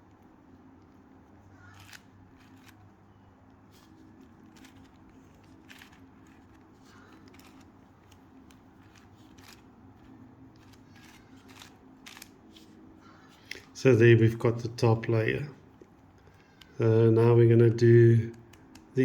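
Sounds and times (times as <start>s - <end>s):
low steady hum: 0.0s - 19.0s
puzzle cube plastic clicks: 4.4s - 12.7s.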